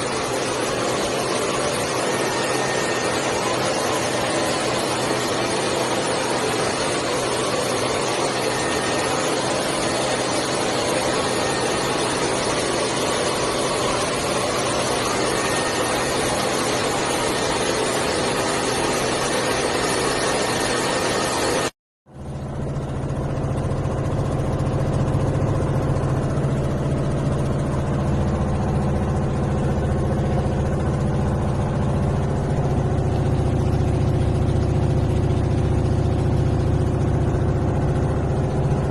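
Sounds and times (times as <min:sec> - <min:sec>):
washing machine motor hum: 0:22.2 - 0:38.9.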